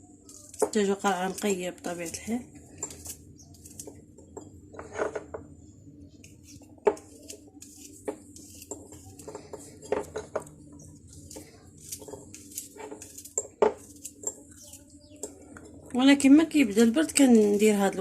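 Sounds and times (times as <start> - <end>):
knife cutting garlic: 6.2 - 15.4.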